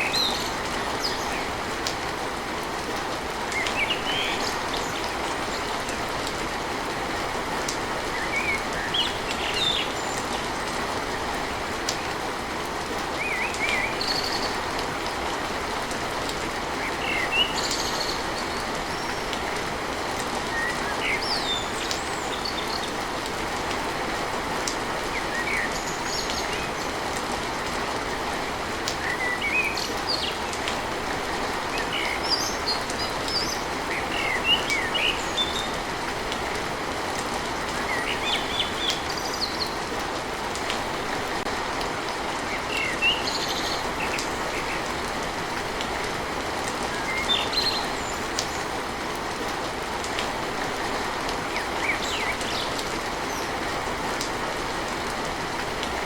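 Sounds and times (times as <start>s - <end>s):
rain on a tin roof: 0.0s - 56.0s.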